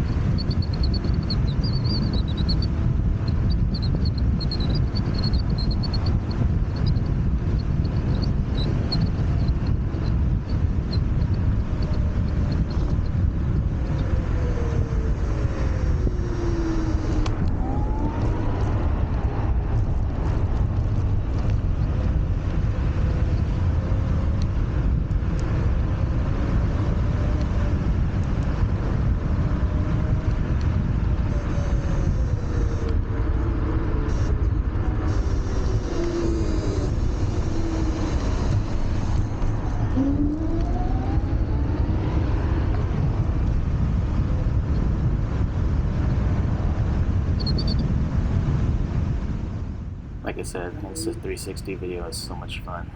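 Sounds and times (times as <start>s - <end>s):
wind rumble on microphone: 0.0s - 52.2s
tyres on road: 50.1s - 52.9s.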